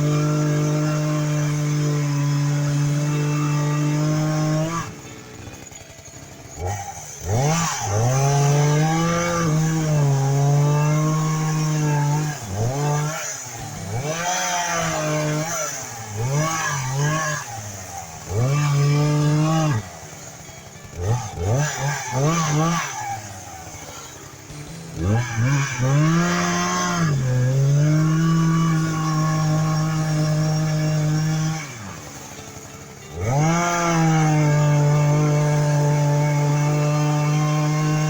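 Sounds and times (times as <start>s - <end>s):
chainsaw cutting log: 0.0s - 38.0s.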